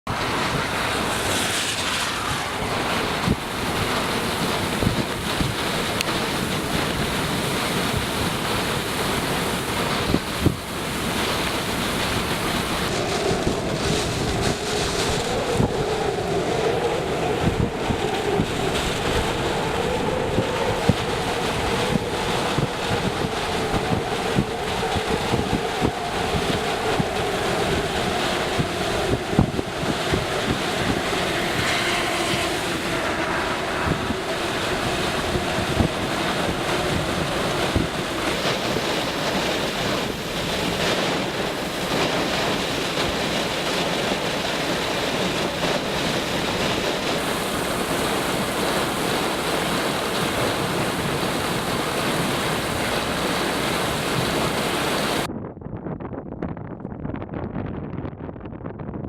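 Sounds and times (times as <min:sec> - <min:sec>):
heavy rain: 0:00.0 - 0:55.3
wind buffeting microphone: 0:00.1 - 0:59.0.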